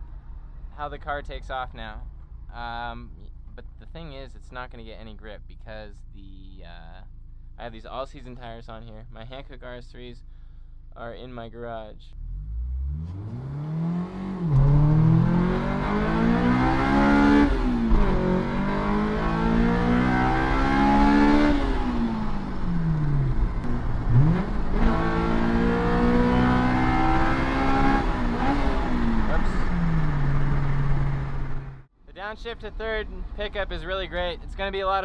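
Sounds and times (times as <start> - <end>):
car engine accelerating hard: 12.2 - 31.9.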